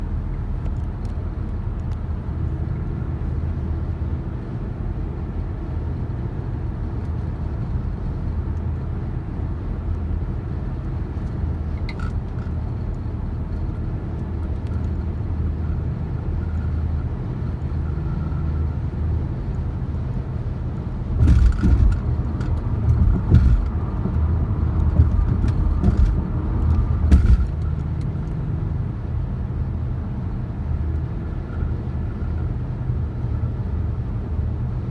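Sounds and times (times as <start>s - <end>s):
vehicle engine and road noise: 0.0s - 34.9s
loud knocks and rattles: 21.1s - 27.8s.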